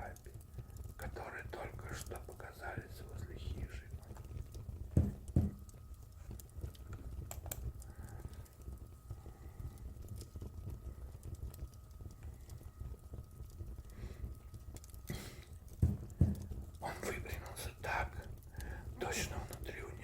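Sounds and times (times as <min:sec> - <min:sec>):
fire crackling and popping: 0:00.0 - 0:20.0
loud knocks: 0:05.0 - 0:05.6, 0:15.8 - 0:16.5.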